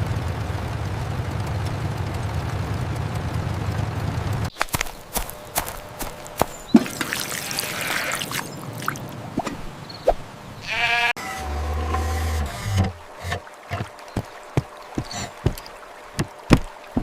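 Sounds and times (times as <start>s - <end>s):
low steady hum: 0.0s - 10.6s
sheep bleating: 7.2s - 8.3s, 10.6s - 11.2s.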